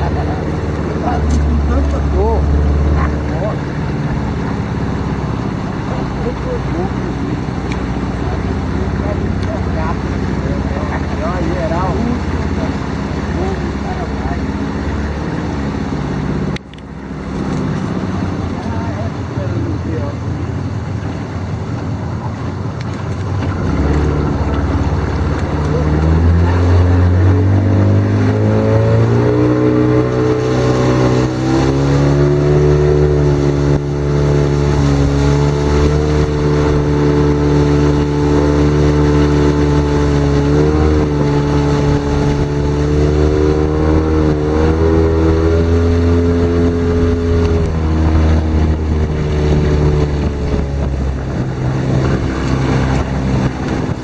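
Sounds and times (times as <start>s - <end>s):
outboard motor running: 0.0s - 54.0s
water rushing: 0.0s - 54.0s
wind: 0.0s - 54.0s.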